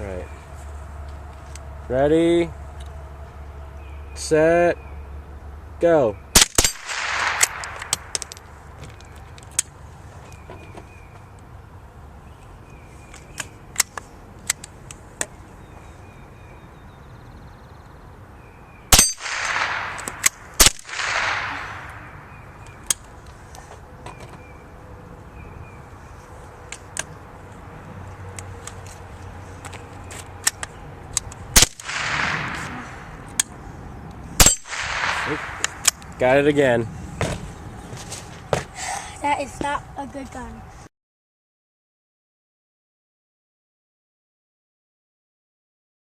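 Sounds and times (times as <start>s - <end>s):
rifle shots: 6.4s - 8.3s, 18.9s - 22.1s, 31.6s - 33.0s, 34.4s - 35.9s
steel target ringing: 18.9s - 20.0s.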